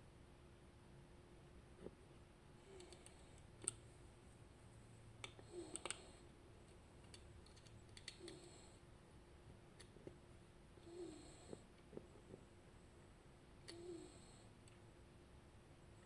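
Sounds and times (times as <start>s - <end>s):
lock picking tools clicking: 7.0s - 8.4s.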